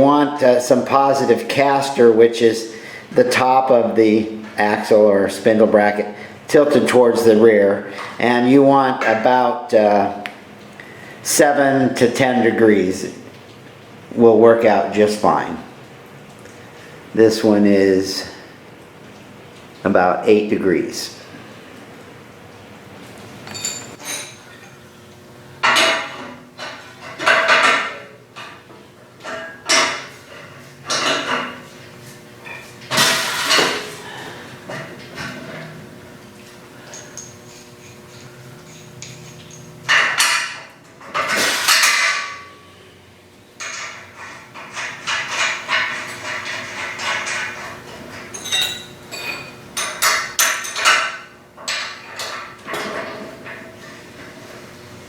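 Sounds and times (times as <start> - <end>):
metal tools clanking: 23.4 - 24.9, 36.8 - 42.7, 43.6 - 53.8
metallic rings: 23.4 - 24.9, 36.9 - 40.6, 43.6 - 53.6
metal parts clattering: 23.5 - 24.7.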